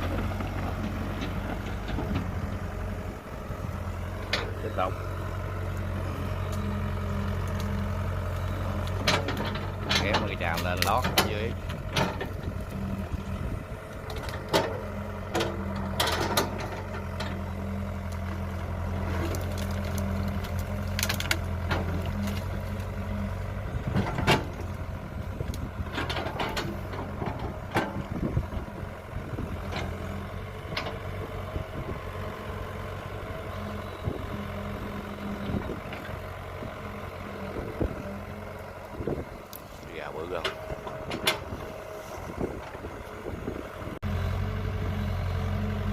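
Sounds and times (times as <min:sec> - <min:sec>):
excavator diesel engine running: 0:00.0 - 0:45.9
excavator bucket knocks and clanks: 0:23.9 - 0:24.7.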